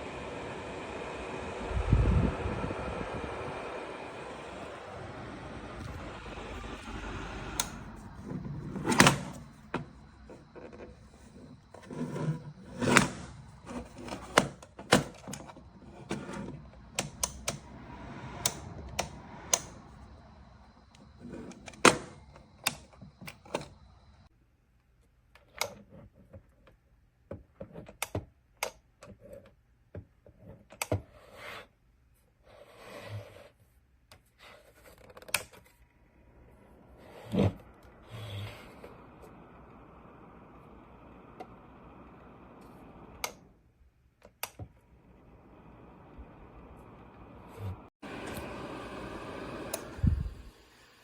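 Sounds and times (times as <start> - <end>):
steady hum: 0.0 - 24.3, 36.0 - 43.7, 44.8 - 51.0.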